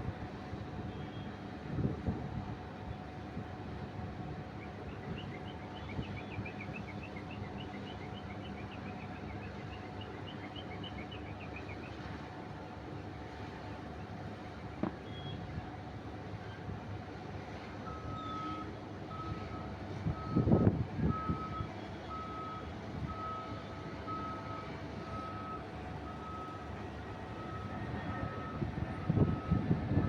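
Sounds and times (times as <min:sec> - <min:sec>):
low engine hum: 0:00.0 - 0:30.0
vehicle reversing alarm beeping: 0:17.8 - 0:30.0.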